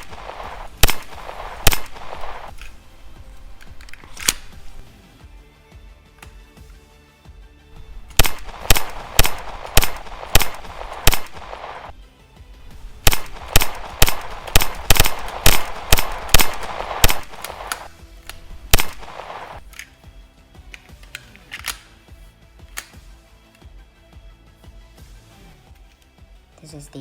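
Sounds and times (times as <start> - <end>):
pistol shots ringing: 0.0 - 2.5, 8.1 - 11.8, 13.0 - 19.6
faint music: 0.0 - 27.0.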